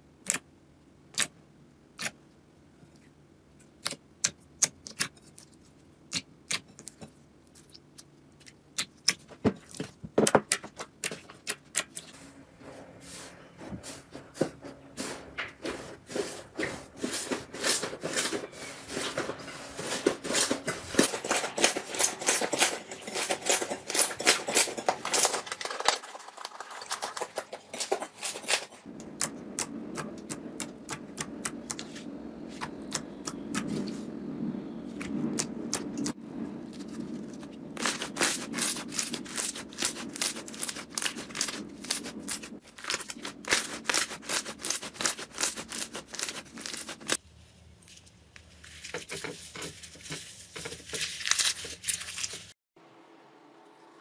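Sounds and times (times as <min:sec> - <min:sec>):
slime crackling and squishing: 0:15.7 - 0:34.0, 0:34.9 - 0:47.2, 0:48.4 - 0:52.5.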